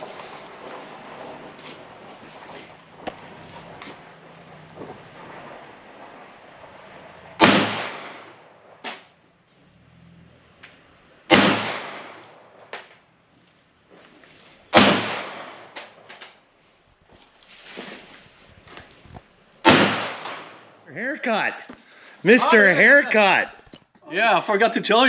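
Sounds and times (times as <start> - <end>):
faint sharp cracks: 0.0 - 9.6, 10.5 - 17.3, 18.8 - 20.9
pistol shots with echo: 7.4 - 9.1, 11.3 - 12.6, 14.7 - 16.0, 19.6 - 20.7.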